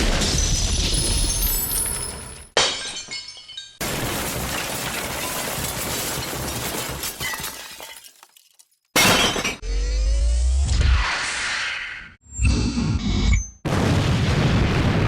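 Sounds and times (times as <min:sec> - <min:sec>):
breaking glass crash: 0:00.0 - 0:09.6
glass shattering: 0:00.0 - 0:09.6.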